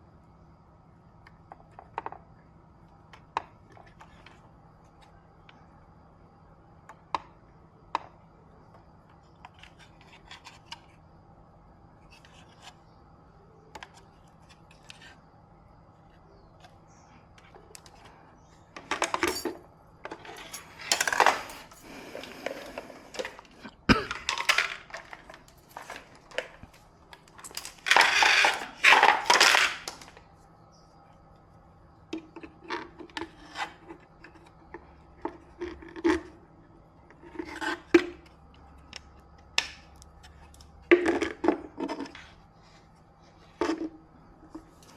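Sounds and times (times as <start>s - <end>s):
metal tools clicking and clinking: 18.8s - 30.0s.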